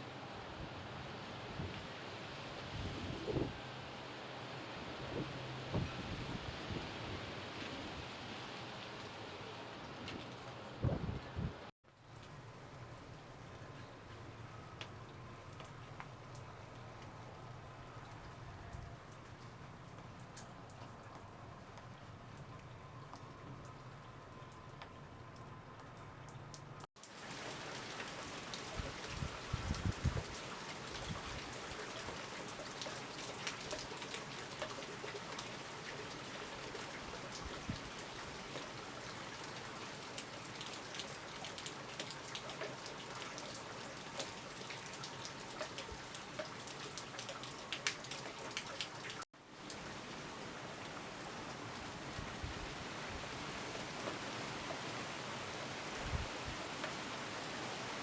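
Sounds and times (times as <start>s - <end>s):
raindrops clicking close by: 8.7s - 52.0s
heavy rain falling: 27.0s - 58.0s.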